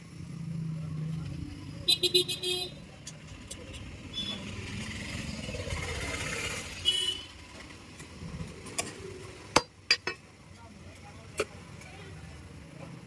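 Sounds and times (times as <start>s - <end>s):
motor vehicle passing: 4.2s - 6.8s.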